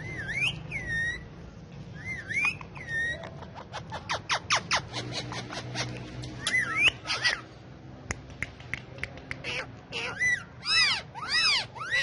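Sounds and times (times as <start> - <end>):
parakeets squawking: 0.0 - 7.8, 9.4 - 12.0
sharp clicks: 8.0 - 9.4.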